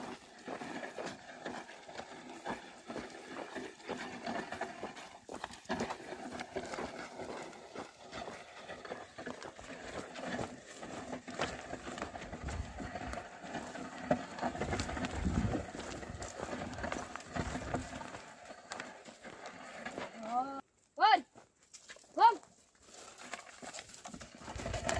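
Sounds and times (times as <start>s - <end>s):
hoof steps and knocks: 0.0s - 20.2s, 21.6s - 24.9s.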